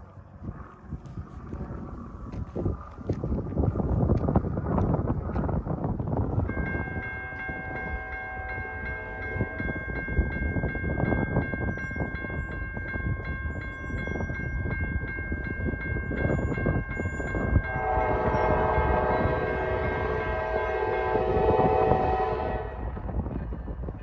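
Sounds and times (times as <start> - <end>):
train rumble: 0.0 - 24.0
crossing bell ringing: 6.3 - 23.0
locomotive horn: 6.8 - 9.7, 17.7 - 23.0.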